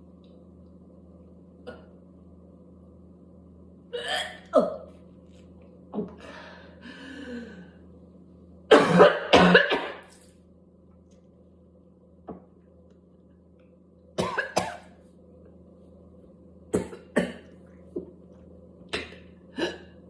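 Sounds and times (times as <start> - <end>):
person coughing harshly: 8.7 - 10.1, 14.2 - 14.9, 16.7 - 17.5, 19.0 - 20.0.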